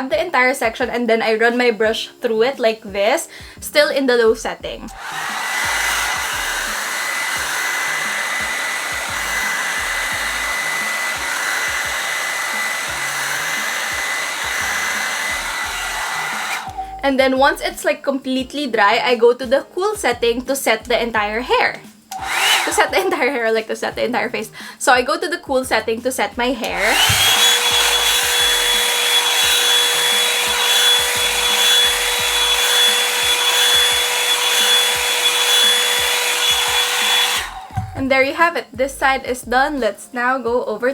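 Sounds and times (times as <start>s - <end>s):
hair dryer blowing with high whine: 4.8s - 17.6s, 21.9s - 23.6s, 26.6s - 38.2s.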